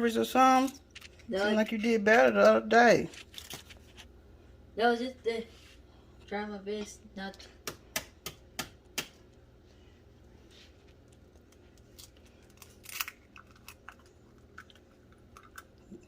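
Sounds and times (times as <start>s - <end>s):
eggshells cracking: 11.2s - 16.0s.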